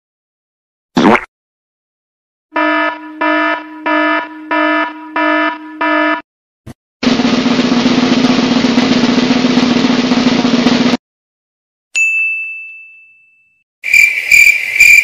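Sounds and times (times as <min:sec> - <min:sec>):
buzzing alarm tone: 0:02.5 - 0:06.3.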